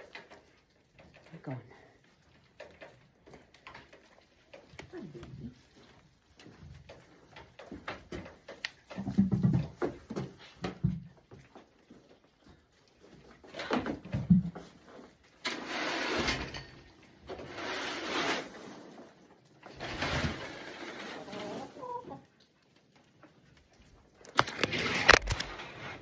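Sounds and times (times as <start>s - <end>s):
scraping strokes: 15.5s - 16.6s, 17.3s - 19.2s.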